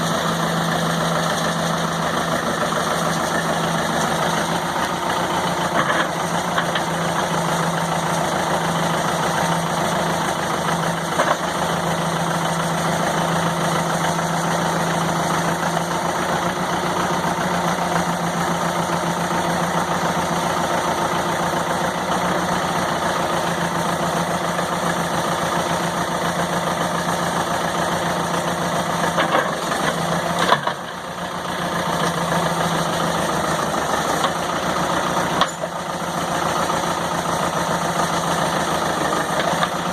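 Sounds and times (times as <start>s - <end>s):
backhoe engine running: 0.0s - 39.9s.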